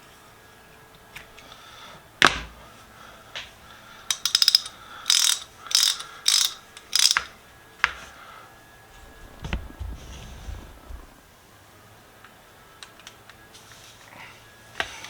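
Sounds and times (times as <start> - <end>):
hand ratchet clicking: 4.1 - 7.3.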